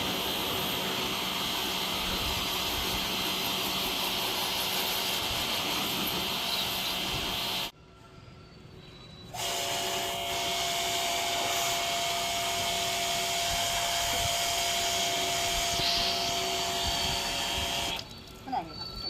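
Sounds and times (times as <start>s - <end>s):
motor-driven machine hissing and humming: 9.4s - 18.0s.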